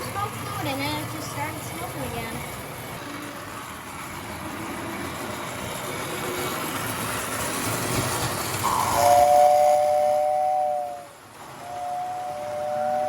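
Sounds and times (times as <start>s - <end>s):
toy train running on track: 0.0s - 13.0s
two-tone train whistle: 8.6s - 13.0s.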